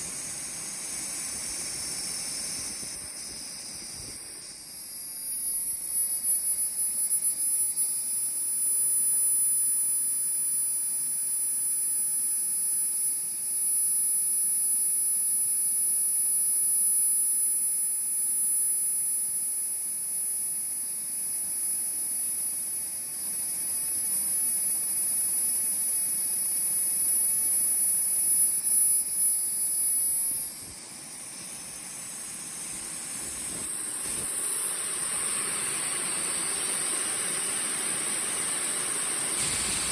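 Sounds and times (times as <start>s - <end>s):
jet turbine whine and roar: 0.0s - 9.6s, 20.9s - 39.9s.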